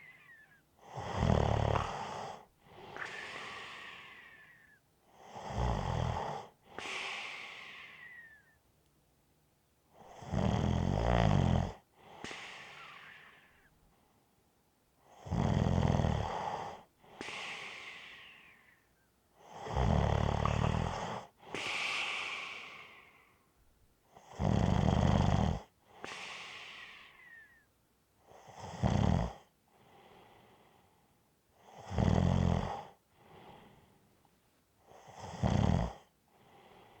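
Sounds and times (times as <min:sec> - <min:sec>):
person snoring: 0:00.9 - 0:04.6, 0:19.6 - 0:23.1, 0:31.8 - 0:32.9, 0:35.1 - 0:36.1.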